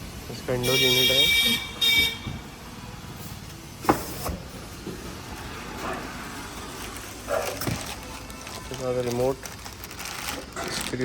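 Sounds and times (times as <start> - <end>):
packaging handling noise: 6.3 - 11.0.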